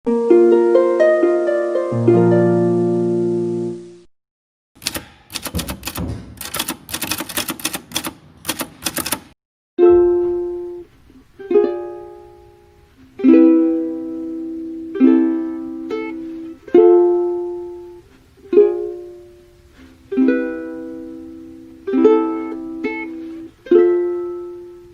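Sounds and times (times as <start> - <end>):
plucked string music: 0.1 - 4.0, 9.8 - 24.9
rapid sharp clicks: 4.8 - 9.4.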